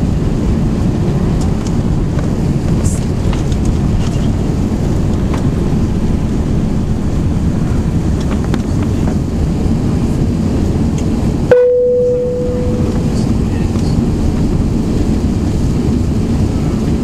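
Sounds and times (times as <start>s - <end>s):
jet engine and airflow rumble: 0.0s - 17.0s
cabin chime: 11.5s - 12.9s.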